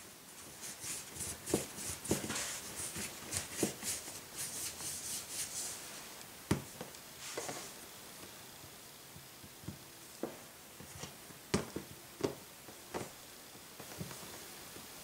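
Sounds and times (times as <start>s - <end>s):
soft rubbing of dough: 0.0s - 12.0s.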